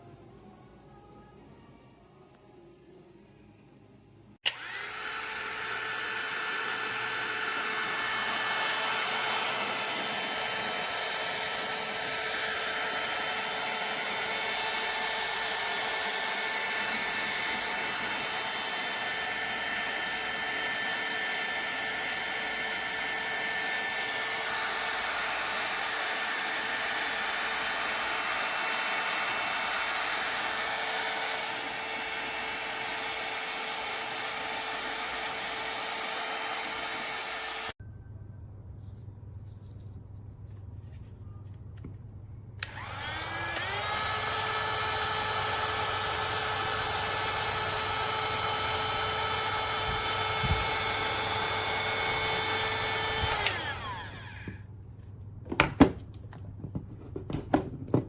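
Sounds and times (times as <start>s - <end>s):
heat gun fan blowing hiss: 42.6s - 54.6s.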